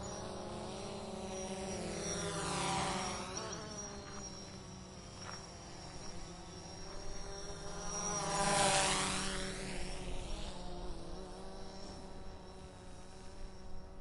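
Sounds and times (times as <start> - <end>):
drone propellers buzzing: 0.0 - 14.0.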